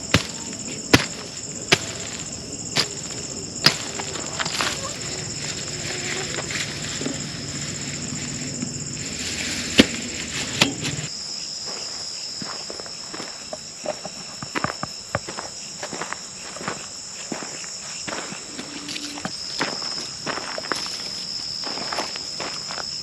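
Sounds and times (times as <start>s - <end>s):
low hum: 0.0s - 11.1s
high-pitched insect chorus: 0.0s - 23.0s.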